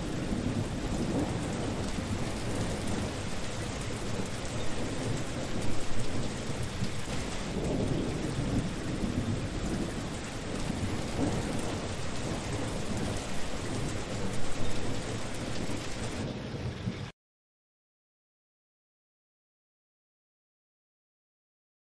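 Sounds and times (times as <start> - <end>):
steady rain hissing: 0.0 - 17.1.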